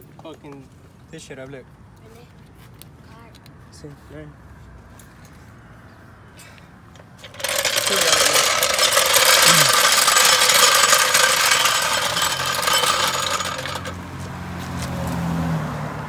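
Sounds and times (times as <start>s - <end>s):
car rushing and rattling: 7.0s - 14.2s.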